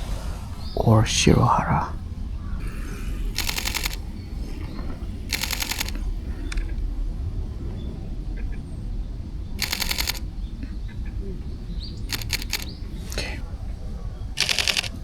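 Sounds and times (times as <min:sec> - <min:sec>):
rapid camera shutter clicks: 0:03.3 - 0:04.2, 0:05.3 - 0:06.8, 0:09.6 - 0:10.3, 0:12.1 - 0:13.3, 0:14.4 - 0:15.0.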